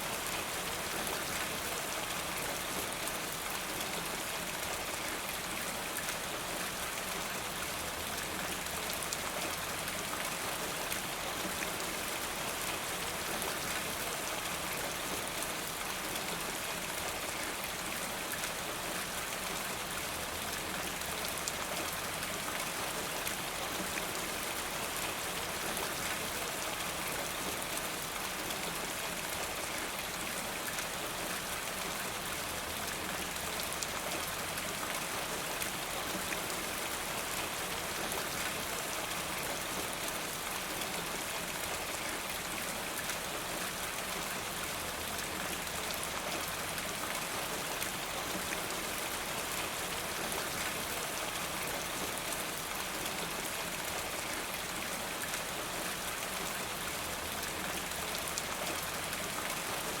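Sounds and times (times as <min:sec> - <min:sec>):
steady rain falling: 0:00.0 - 1:00.0.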